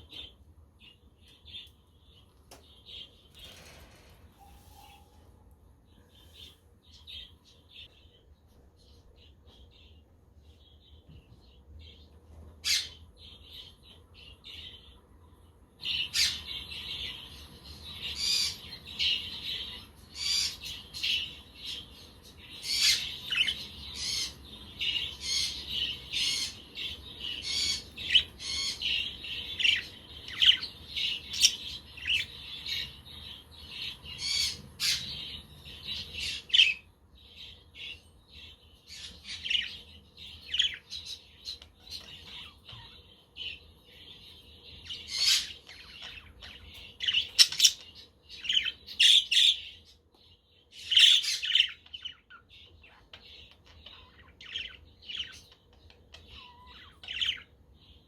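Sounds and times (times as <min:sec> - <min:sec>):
budgerigars chirping: 0:44.2 - 0:49.8, 0:50.8 - 0:57.6.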